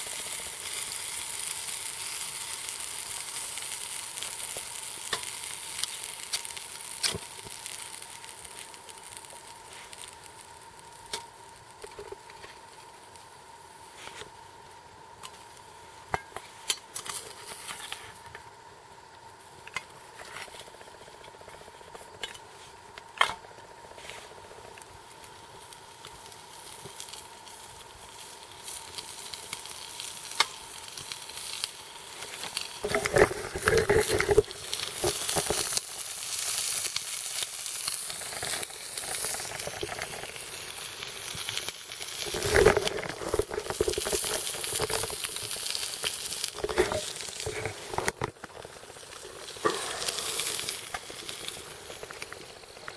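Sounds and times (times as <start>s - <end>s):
food sizzling in a pan: 0.0s - 52.9s
stirring and scraping in pan: 32.2s - 35.8s, 46.4s - 48.4s, 49.4s - 52.3s.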